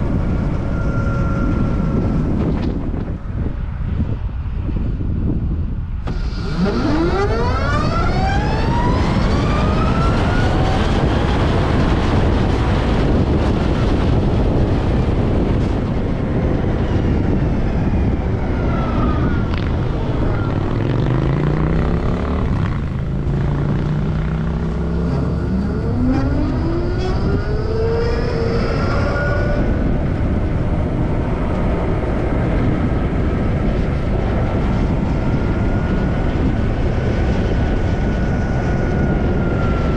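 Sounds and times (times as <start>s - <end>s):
rush of wind: 0.0s - 39.9s
electric motor whine: 6.1s - 11.0s.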